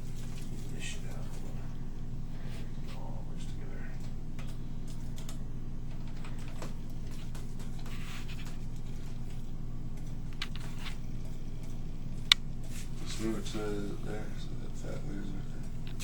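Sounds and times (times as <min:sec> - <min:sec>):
low electrical hum: 0:00.0 - 0:16.0
keyboard and mouse clicks: 0:10.0 - 0:11.0.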